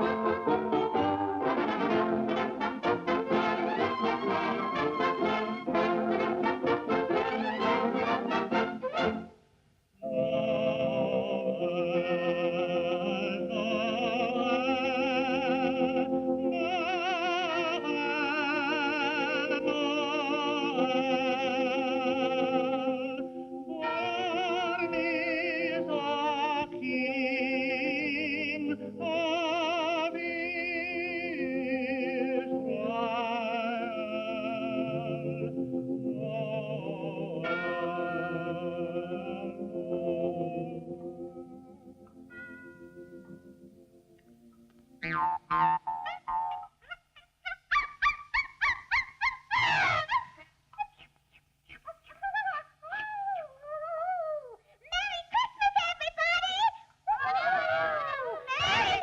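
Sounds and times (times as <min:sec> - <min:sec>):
held accompaniment tone: 0:00.0 - 0:09.4
operatic singing with vibrato: 0:00.0 - 0:41.5, 0:51.8 - 0:59.0.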